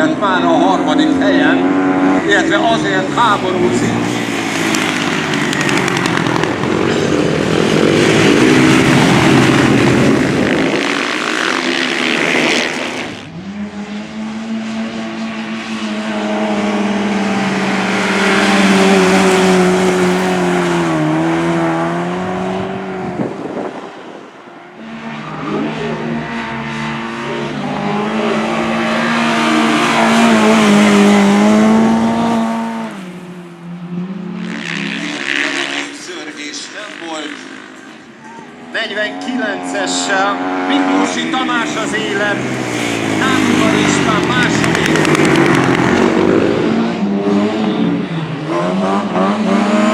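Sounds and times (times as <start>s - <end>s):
motorcycles racing: 0.0s - 49.9s.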